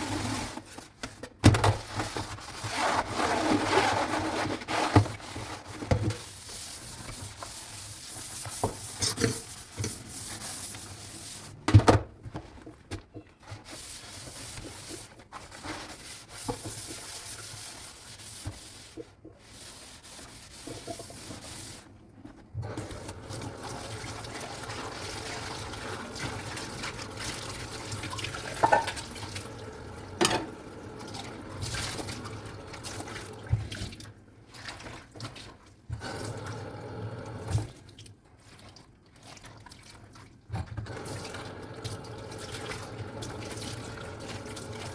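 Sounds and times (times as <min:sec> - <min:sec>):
dish scrubbing: 0:01.6 - 0:11.8, 0:12.4 - 0:36.6, 0:38.4 - 0:44.9
dishes clinking: 0:28.6 - 0:29.0, 0:30.2 - 0:30.6.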